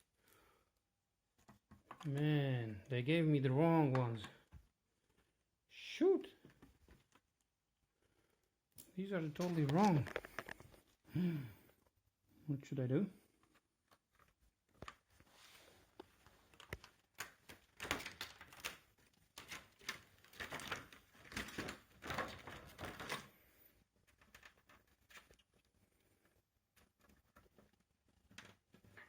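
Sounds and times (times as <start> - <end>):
rustling: 13.2 - 29.0.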